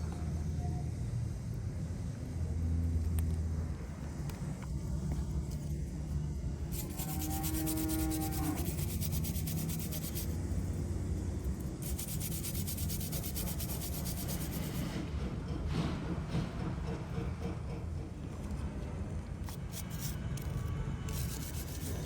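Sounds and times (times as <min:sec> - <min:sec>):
steady low hum: 0:00.0 - 0:15.2, 0:17.9 - 0:22.0
abrasive sanding on metal part: 0:06.6 - 0:15.0, 0:19.4 - 0:22.0.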